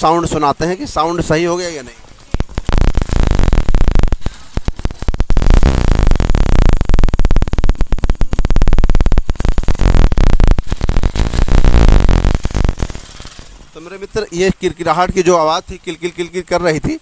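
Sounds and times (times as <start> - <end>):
motorcycle engine running: 1.4 - 5.9, 8.7 - 16.4.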